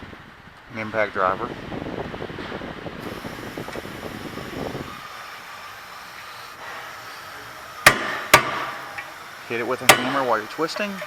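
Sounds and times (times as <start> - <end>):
hammer striking impact driver: 6.2 - 10.4.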